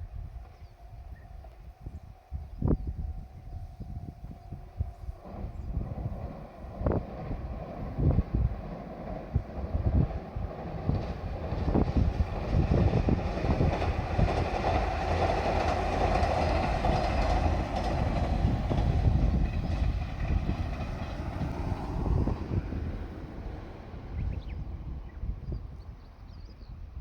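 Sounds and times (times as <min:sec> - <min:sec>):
train running noise: 0:00.0 - 0:27.0
train wheels clacking over rail joints: 0:05.2 - 0:23.0.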